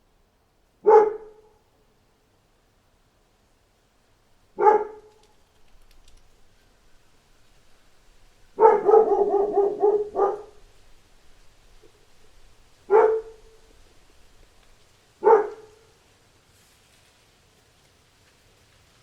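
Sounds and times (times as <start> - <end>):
dog barking: 0.8 - 1.6, 4.6 - 5.2, 8.6 - 10.7, 12.9 - 13.7, 15.2 - 15.9.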